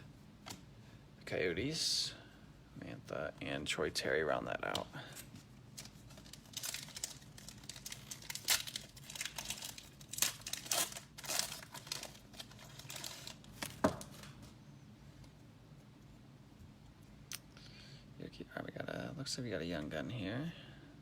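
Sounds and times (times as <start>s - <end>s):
wrapper tearing and crinkling: 5.7s - 14.3s.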